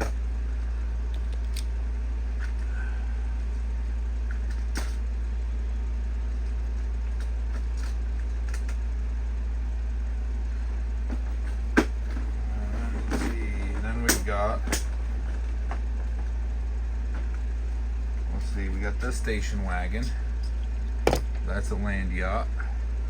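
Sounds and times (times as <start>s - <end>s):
low hum: 0.0s - 23.0s.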